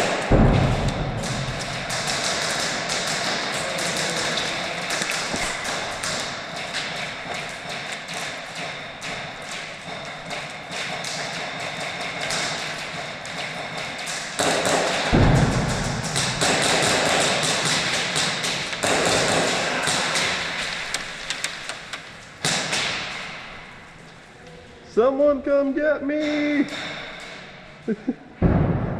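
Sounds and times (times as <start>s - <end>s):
heavy thud: 0.0s - 1.9s, 15.1s - 16.5s, 28.4s - 28.9s
airsoft gunfire: 0.0s - 23.7s
pellets striking walls: 0.0s - 23.8s, 26.2s - 27.6s, 28.4s - 28.9s.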